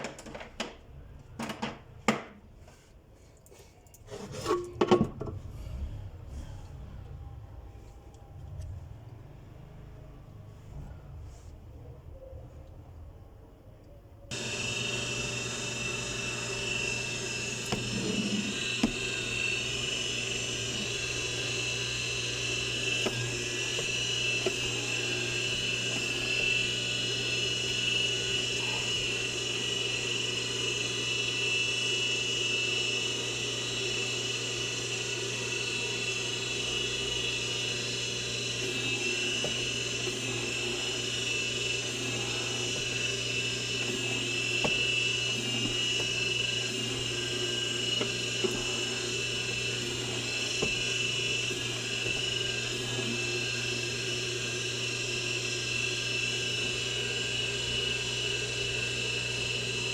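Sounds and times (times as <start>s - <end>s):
sewing machine motor whining: 14.3s - 59.9s.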